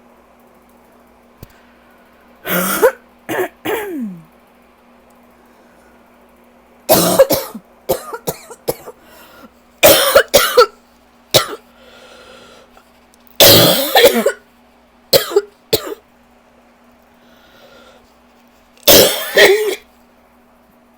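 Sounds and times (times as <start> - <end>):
person coughing: 2.4 - 4.3, 6.9 - 9.0, 9.8 - 10.8, 11.4 - 11.6, 13.4 - 14.4, 15.1 - 16.0, 18.8 - 19.9.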